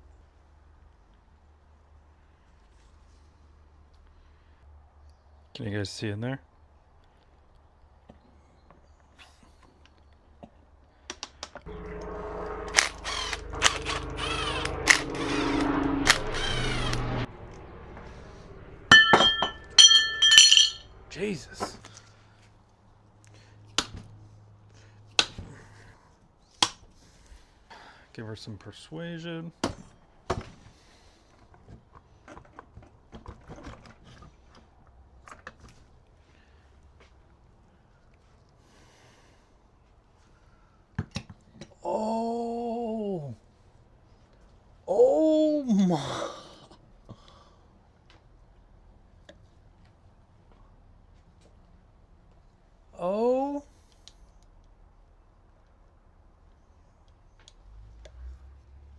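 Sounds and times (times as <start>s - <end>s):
small motorized hand tool whining: 12.0s - 17.3s
ringing metal clanks: 18.9s - 20.9s.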